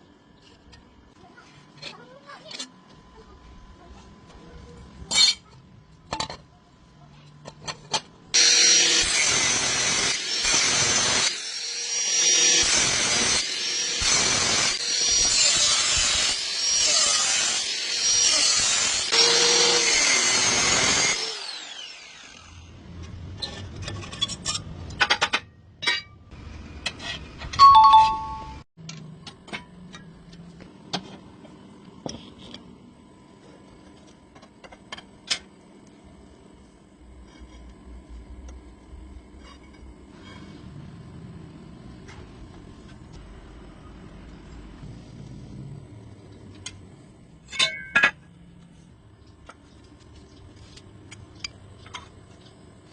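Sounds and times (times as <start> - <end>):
power tool whining: 8.3 - 22.7
ringing metal clank: 47.5 - 48.3.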